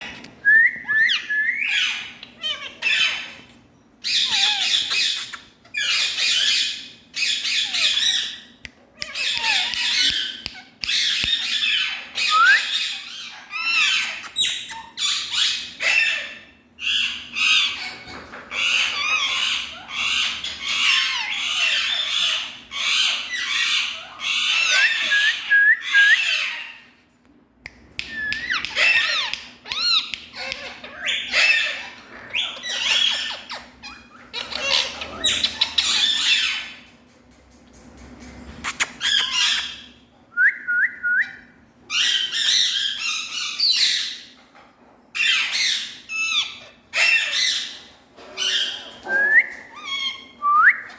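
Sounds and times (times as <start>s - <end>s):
parakeet squawking: 28.4s - 36.8s.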